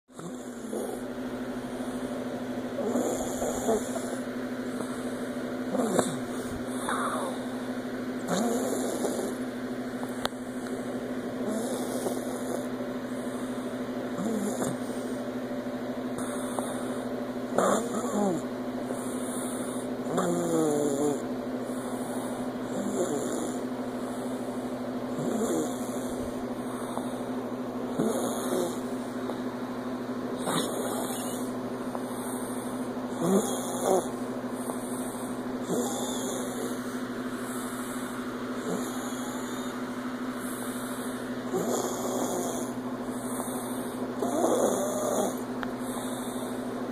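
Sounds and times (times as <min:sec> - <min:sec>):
steady low hum: 0:00.1 - 0:46.9
person snoring: 0:00.2 - 0:09.5, 0:11.4 - 0:15.2, 0:16.2 - 0:27.3, 0:27.9 - 0:29.4, 0:30.4 - 0:46.7.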